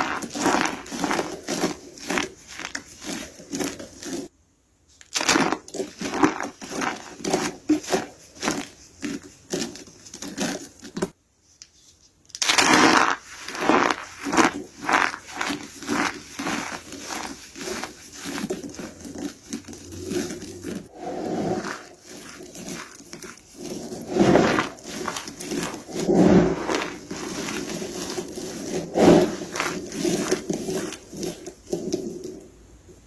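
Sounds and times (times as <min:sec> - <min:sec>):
soap crunching and crackling: 0:00.0 - 0:04.3, 0:05.0 - 0:11.2, 0:12.3 - 0:20.9, 0:21.6 - 0:32.6.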